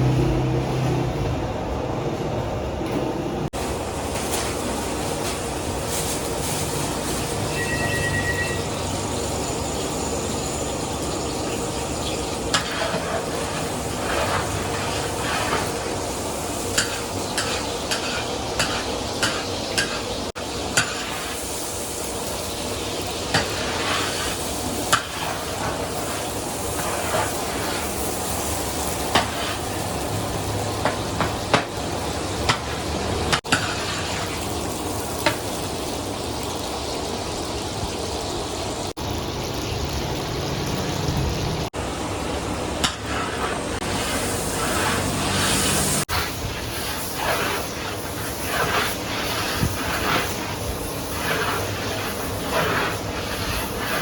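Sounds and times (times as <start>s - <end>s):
gritty hiss of roasting sand: 3.6s - 37.0s, 43.0s - 54.0s
stirrer scraping a pan: 16.7s - 20.1s.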